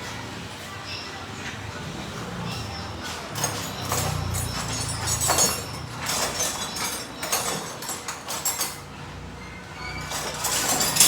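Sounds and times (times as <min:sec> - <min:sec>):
metal tools clinking: 0:02.4 - 0:11.0.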